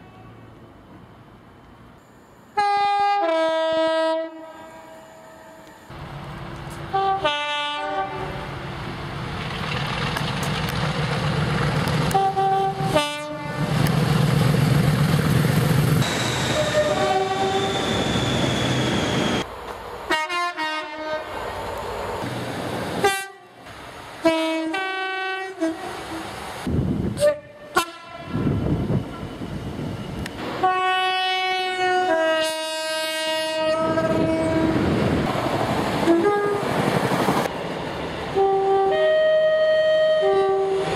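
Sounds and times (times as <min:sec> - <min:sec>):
train noise: 0:00.0 - 0:40.9
train horn blasts: 0:02.5 - 0:05.9, 0:06.9 - 0:08.5, 0:12.1 - 0:13.7, 0:16.5 - 0:17.7, 0:20.1 - 0:21.3, 0:23.0 - 0:23.6, 0:24.2 - 0:26.3, 0:27.2 - 0:28.6, 0:30.6 - 0:34.9, 0:36.1 - 0:36.6, 0:38.3 - 0:40.9.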